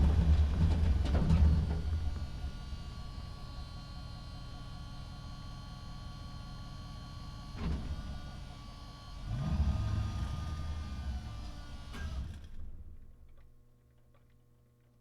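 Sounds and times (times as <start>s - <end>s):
truck engine running and revving: 7.3s - 11.7s.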